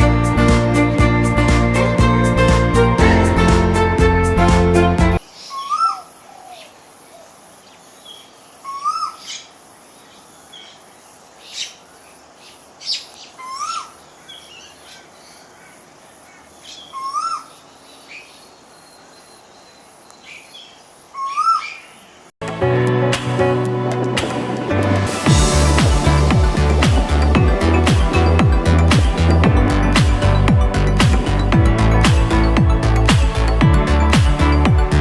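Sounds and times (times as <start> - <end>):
cuckoo calling: 5.2 - 22.2
small birds chirping: 5.2 - 22.4.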